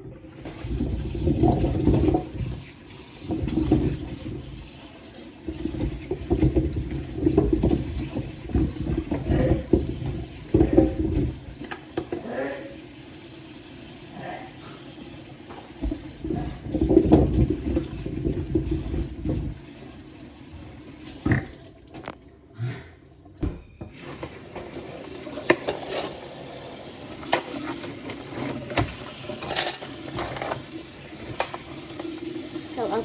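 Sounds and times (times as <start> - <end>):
water running from tap: 0.2 - 22.5, 23.9 - 33.0
kitchenware clinking: 23.4 - 32.2.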